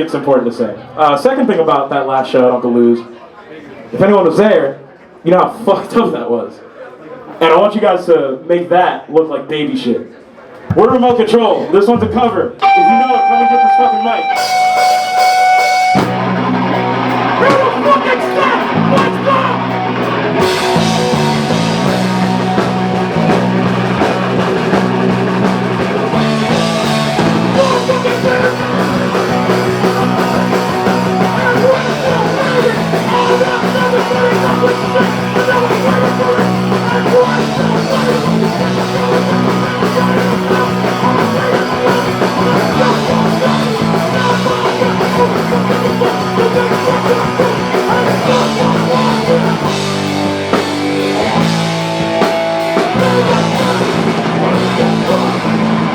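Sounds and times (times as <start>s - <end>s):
live punk rock band: 12.6s - 55.9s.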